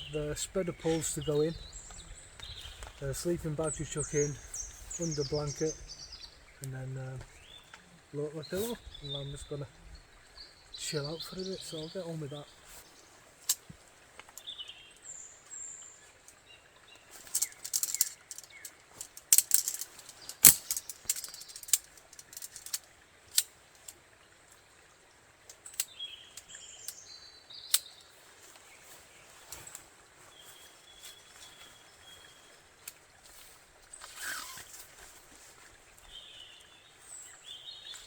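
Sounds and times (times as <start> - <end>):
small birds chirping: 0.0 - 24.8, 25.5 - 38.0
fabric and gear rustling: 17.1 - 22.8, 33.2 - 36.2.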